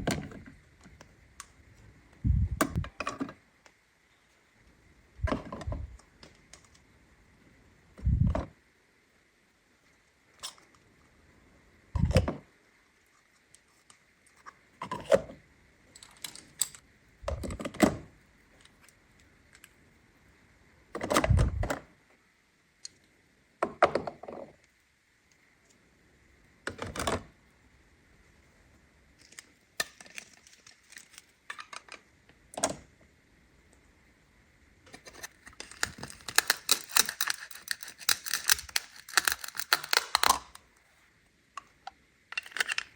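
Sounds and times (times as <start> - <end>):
faint steady high hum: 0.0 - 42.9
plastic toy pieces clattering: 34.9 - 40.6, 42.3 - 42.9.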